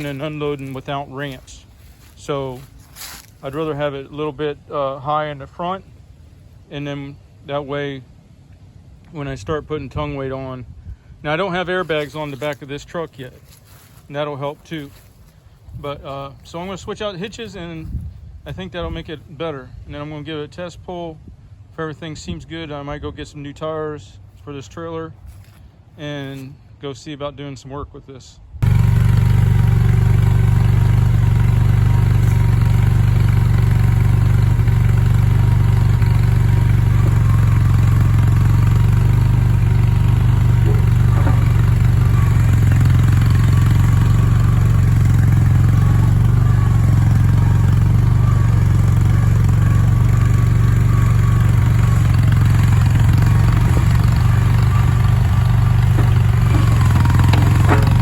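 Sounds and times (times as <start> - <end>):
engine running steadily: 0.0 - 26.7, 28.4 - 58.0
light clanks: 53.0 - 58.0.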